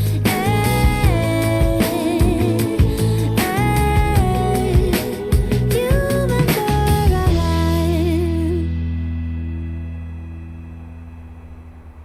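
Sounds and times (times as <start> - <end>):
pop song with singing: 0.0 - 8.9.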